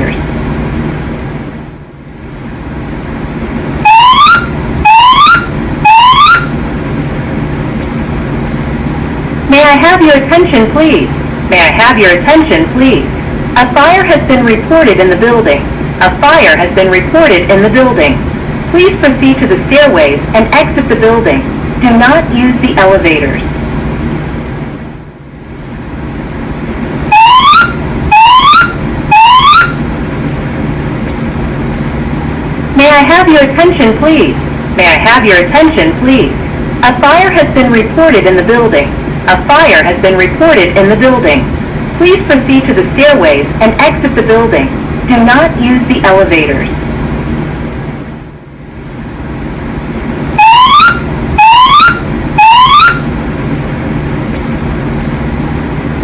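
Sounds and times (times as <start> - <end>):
steady low hum: 0.0 - 56.0
rising whoop alarm tones: 3.8 - 6.6, 27.1 - 29.8, 50.4 - 53.1.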